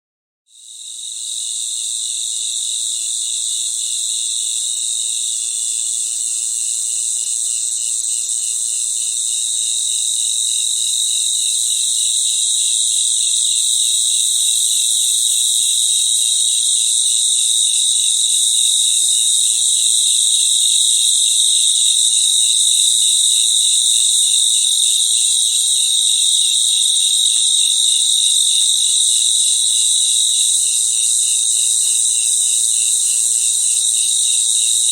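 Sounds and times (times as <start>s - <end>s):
crickets chirping: 0.6s - 34.9s.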